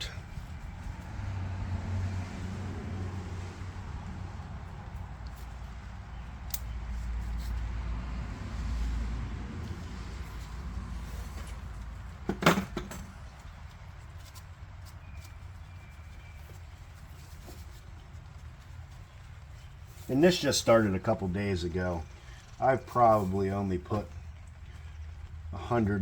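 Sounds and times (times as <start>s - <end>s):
light clicks of brake parts: 5.2s - 7.6s.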